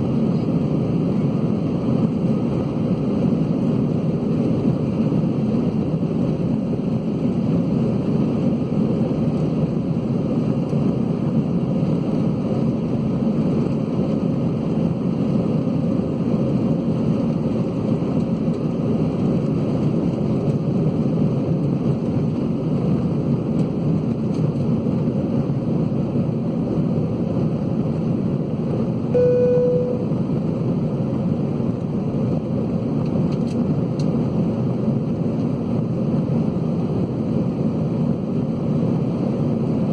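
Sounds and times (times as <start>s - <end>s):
airplane cabin rumble: 0.0s - 39.9s
short single tone: 29.1s - 30.2s.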